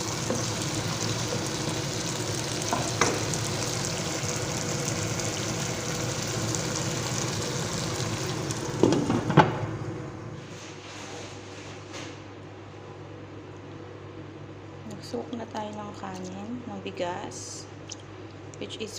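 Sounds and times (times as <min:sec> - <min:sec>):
food sizzling in oil: 0:00.0 - 0:09.3.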